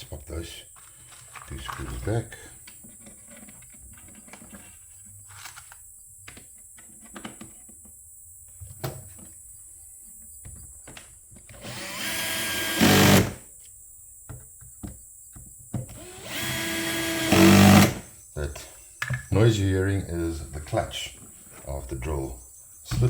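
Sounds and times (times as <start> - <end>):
drill driving a screw: 11.5 - 13.4, 15.9 - 18.1
drill clutch slipping: 11.6 - 13.4, 15.9 - 18.0.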